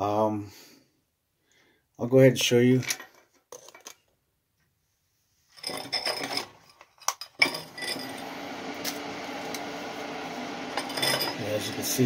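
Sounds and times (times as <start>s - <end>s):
clinking and handling noise: 2.8s - 4.1s, 5.5s - 9.7s, 10.7s - 11.8s.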